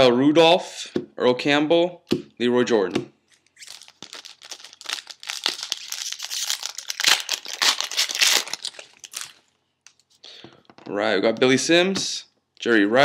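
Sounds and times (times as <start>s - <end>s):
wrapper tearing and crinkling: 3.6s - 9.5s.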